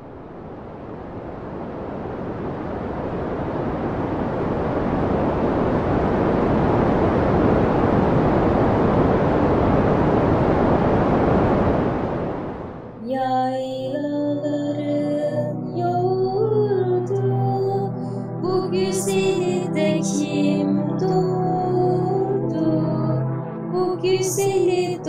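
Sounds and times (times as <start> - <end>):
steady rushing noise: 0.0 - 13.1.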